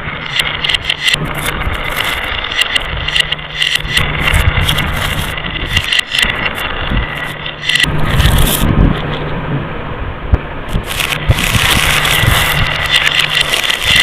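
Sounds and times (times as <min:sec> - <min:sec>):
marbles rolling on a track: 0:00.0 - 0:08.6, 0:10.8 - 0:14.0
marbles clicking and clinking: 0:10.9 - 0:14.0.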